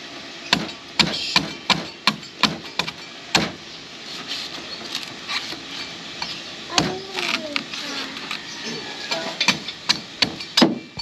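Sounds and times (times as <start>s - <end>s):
machete chopping coconut husk: 0.5s - 3.6s, 9.4s - 10.9s.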